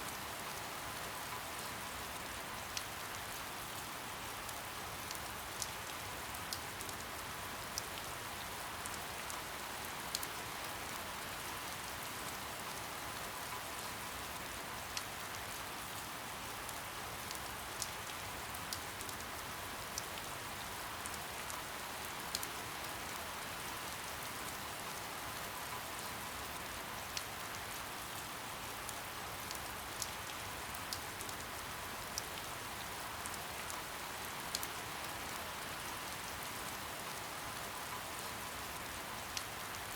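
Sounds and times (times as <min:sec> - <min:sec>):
soft steady rain hiss: 0:00.0 - 0:39.9.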